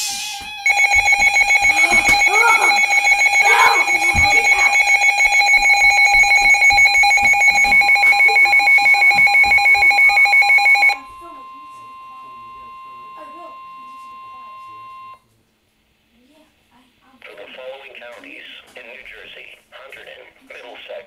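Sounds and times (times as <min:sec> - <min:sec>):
high-pitched rapid alarm beeps: 0:00.2 - 0:15.2
steady low warning tone: 0:00.6 - 0:15.2.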